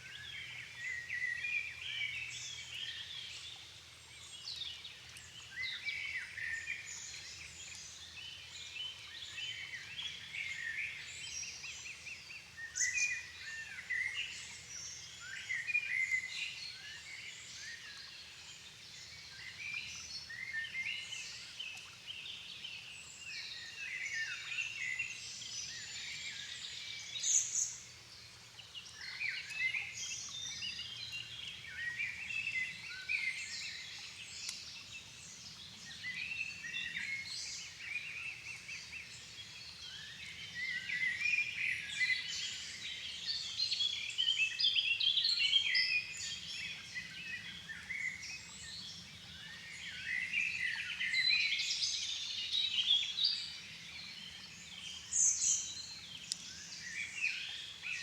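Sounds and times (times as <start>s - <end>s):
songbirds chorus: 22.8s - 58.0s.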